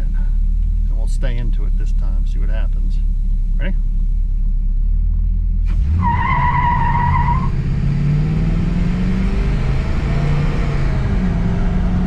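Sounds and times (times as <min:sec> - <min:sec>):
car engine revving: 0:00.0 - 0:12.0
tires squealing: 0:05.7 - 0:07.6.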